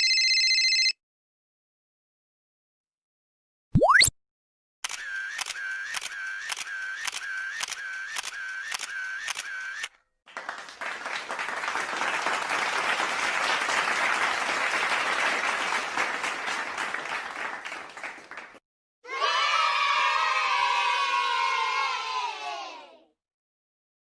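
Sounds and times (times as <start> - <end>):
camera shutter clicks: 4.9 - 9.9
crowd cheering and applauding: 10.3 - 22.1.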